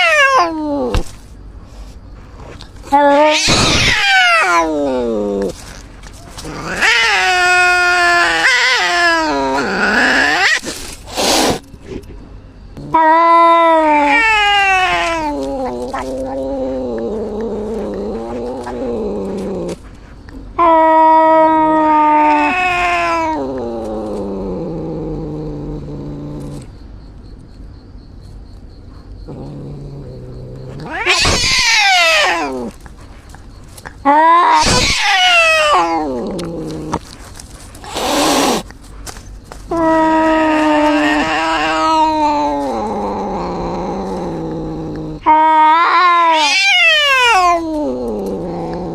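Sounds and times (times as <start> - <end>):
cat yowling: 0.0 - 1.0, 2.9 - 5.6, 6.2 - 11.6, 12.8 - 19.8, 20.6 - 26.0, 29.3 - 32.8, 34.0 - 37.0, 39.7 - 48.9.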